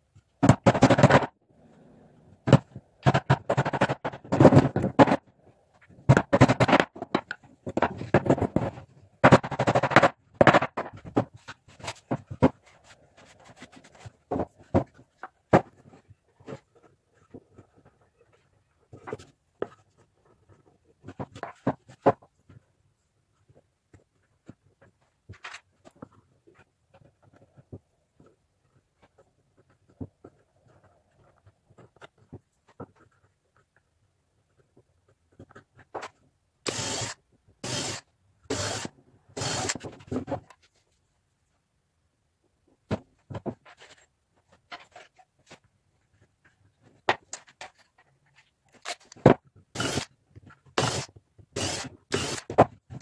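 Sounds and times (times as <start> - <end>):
wooden pieces knocking and clicking: 2.4 - 5.3, 6.1 - 12.8.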